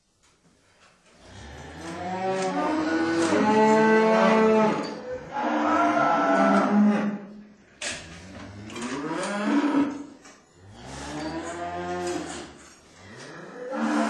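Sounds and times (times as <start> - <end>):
cow mooing: 1.3 - 7.2, 8.7 - 10.1, 10.7 - 12.5, 13.2 - 14.0.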